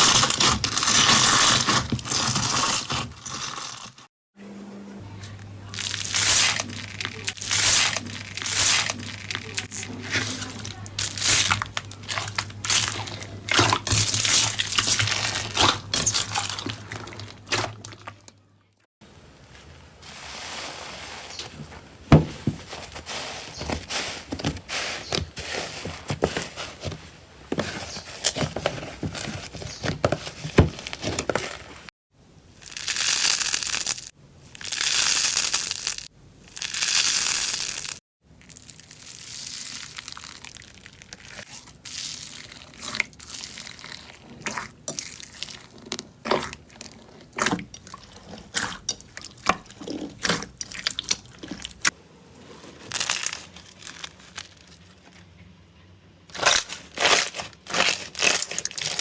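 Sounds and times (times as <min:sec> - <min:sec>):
slime crackling and crunching: 0:00.0 - 0:04.0, 0:05.7 - 0:18.3, 0:32.6 - 0:55.2, 0:56.3 - 0:59.0.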